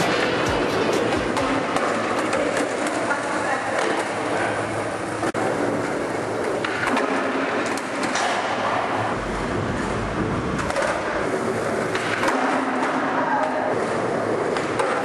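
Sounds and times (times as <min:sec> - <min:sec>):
skateboard wheels rolling on pavement: 0:00.0 - 0:15.0
skateboard clicks and knocks: 0:01.0 - 0:04.2, 0:05.3 - 0:08.8, 0:10.6 - 0:15.0
low rumble: 0:09.0 - 0:11.8.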